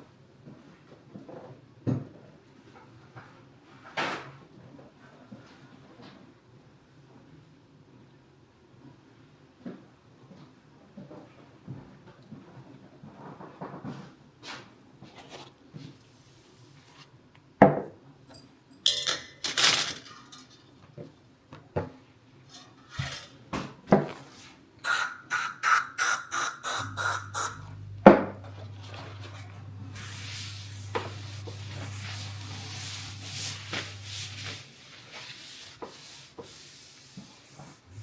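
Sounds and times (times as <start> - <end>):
hiss: 24.8 - 27.8, 29.9 - 34.7
scrubbing strokes: 24.8 - 38.0
steady low hum: 25.1 - 34.6, 37.8 - 38.0.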